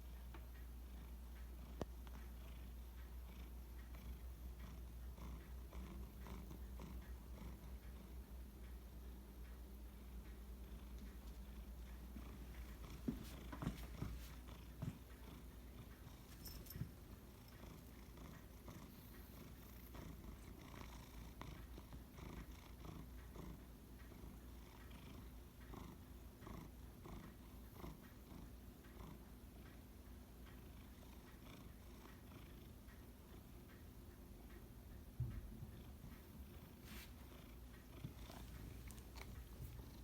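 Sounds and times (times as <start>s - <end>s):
cat purring: 0.0s - 40.0s.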